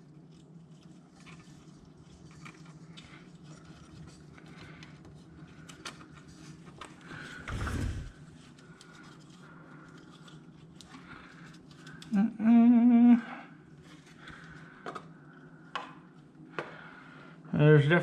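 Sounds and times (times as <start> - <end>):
faint clicks of handled parts: 0.3 - 7.0, 8.6 - 12.1
man humming: 12.1 - 13.4.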